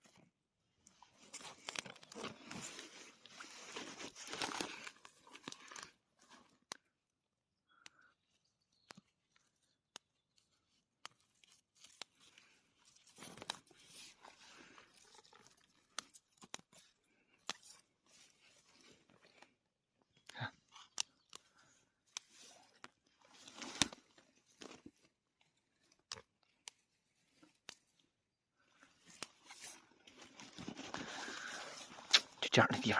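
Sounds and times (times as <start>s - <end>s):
rustling leaves and undergrowth: 1.1s - 6.4s, 22.2s - 26.5s, 28.8s - 32.4s
fern stems snapping: 20.1s - 25.1s.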